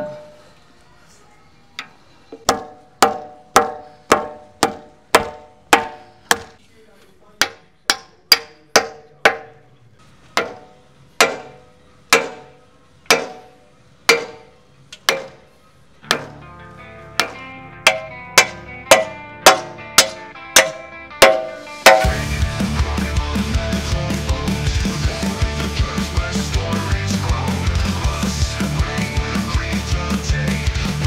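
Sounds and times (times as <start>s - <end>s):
hammer striking steel: 0.0s - 0.4s, 2.4s - 6.6s, 7.4s - 9.6s, 10.4s - 16.4s, 17.2s - 22.4s.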